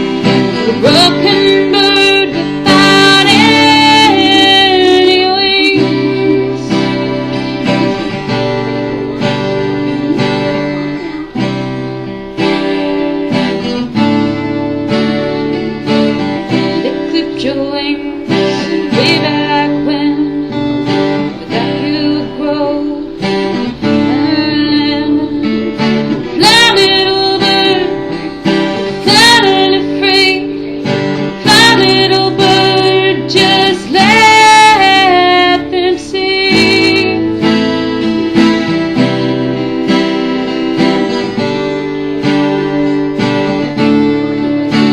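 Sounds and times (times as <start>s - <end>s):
acoustic guitar: 0.0s - 44.9s
person singing: 0.0s - 44.9s.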